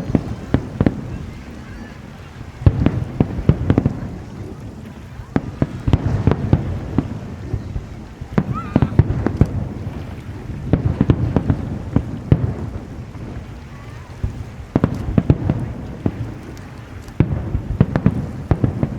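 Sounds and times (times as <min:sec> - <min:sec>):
rising firework whistle: 0:00.0 - 0:04.5, 0:05.3 - 0:09.8
fireworks bangs and cracks: 0:00.0 - 0:18.9
low rolling rumble: 0:00.0 - 0:18.9.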